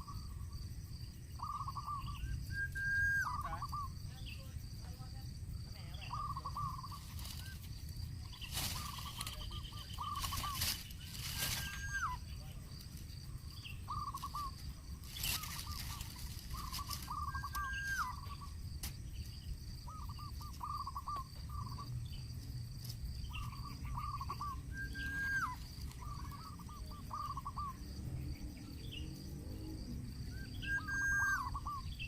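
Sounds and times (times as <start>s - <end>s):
high insect buzz: 3.3s - 32.0s
bird calling falling notes: 8.4s - 12.3s, 13.9s - 18.5s, 23.4s - 27.7s, 30.6s - 31.8s.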